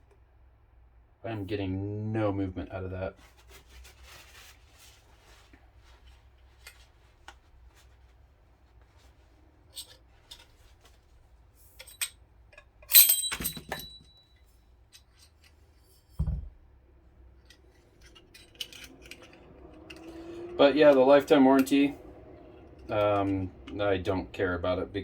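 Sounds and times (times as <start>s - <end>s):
ringing metallic clink: 12.9s - 14.4s
dull thump: 16.2s - 16.6s
small metal clicks: 17.4s - 20.6s.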